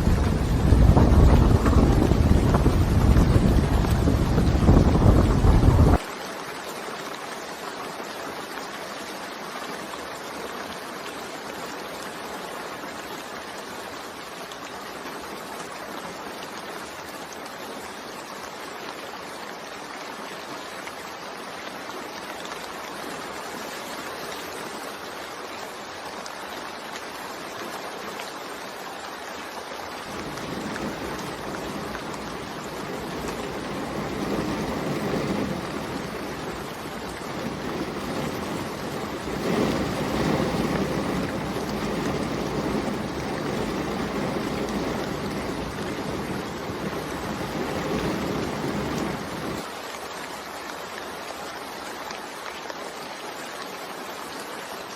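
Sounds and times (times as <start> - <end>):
low rumble: 0.0 - 6.0
steady rain falling: 0.0 - 54.9.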